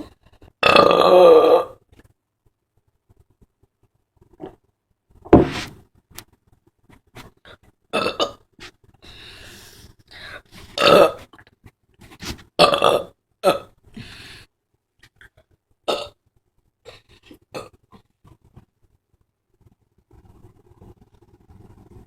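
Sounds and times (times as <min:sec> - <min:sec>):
girl burping loudly: 0:00.6 - 0:01.8, 0:07.9 - 0:08.4, 0:10.8 - 0:11.2, 0:12.6 - 0:13.8, 0:15.9 - 0:16.2.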